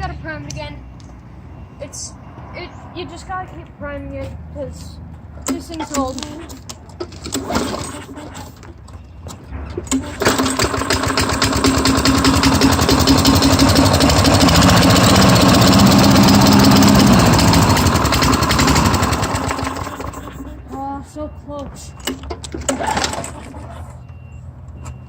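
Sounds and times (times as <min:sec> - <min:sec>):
lawn mower engine running: 0:07.1 - 0:08.6, 0:09.9 - 0:20.8.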